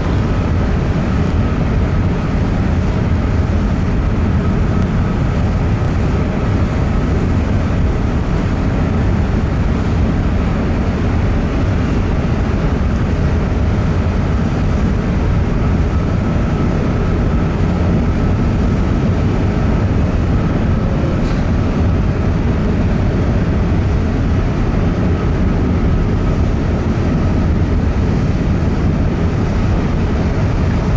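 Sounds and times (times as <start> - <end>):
faint steady whine: 0.0 - 30.9
ship engines rumbling: 0.0 - 30.9.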